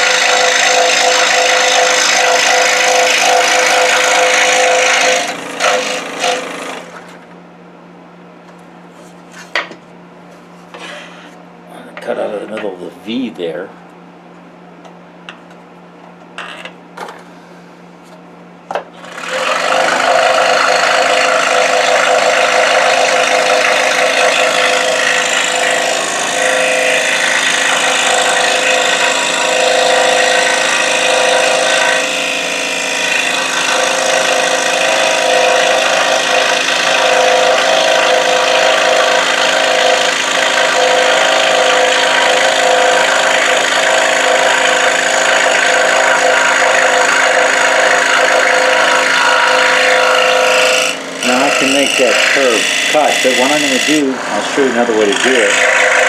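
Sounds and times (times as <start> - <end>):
scroll saw cutting wood: 0.0 - 7.2, 19.0 - 56.0.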